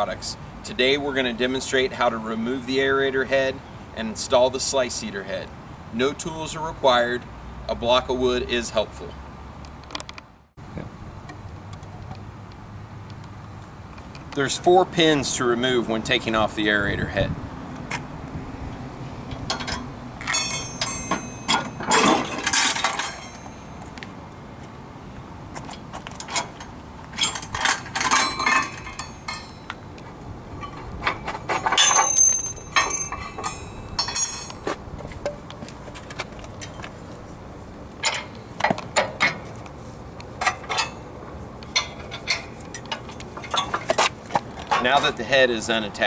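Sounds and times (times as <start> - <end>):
metal pins clinking and knocking: 19.3 - 24.0, 25.6 - 29.8, 30.5 - 36.9, 38.0 - 39.6, 40.4 - 45.2.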